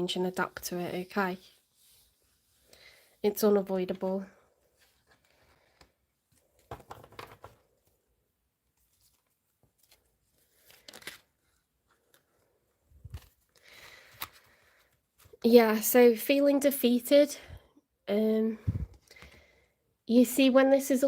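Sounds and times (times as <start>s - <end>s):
cards rustling and clicking: 4.8s - 8.0s, 8.8s - 15.4s.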